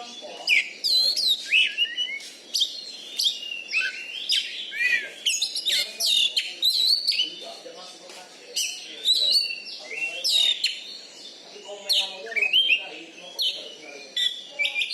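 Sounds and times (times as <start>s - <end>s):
bird singing varied whistles: 0.1s - 7.4s.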